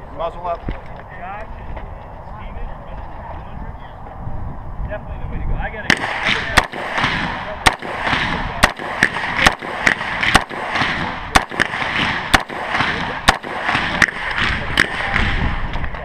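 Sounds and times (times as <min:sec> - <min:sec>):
gunshots: 0:05.8 - 0:16.0.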